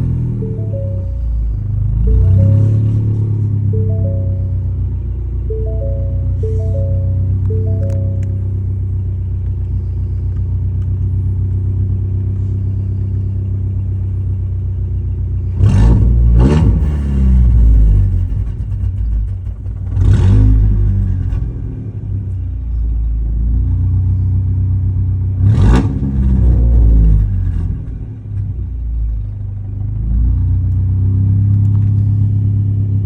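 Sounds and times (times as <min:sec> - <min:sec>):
engine throttle blips: 0:00.0 - 0:10.0.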